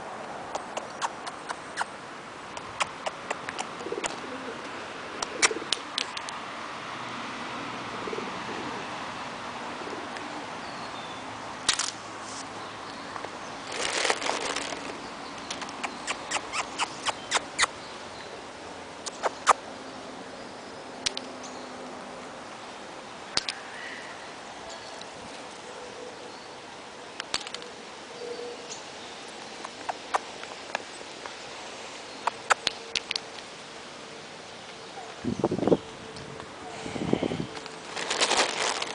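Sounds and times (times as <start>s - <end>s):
sharp taps and clicks: 2.6s - 4.2s
pigeons cooing: 2.8s - 6.0s, 7.9s - 8.9s, 9.7s - 10.5s.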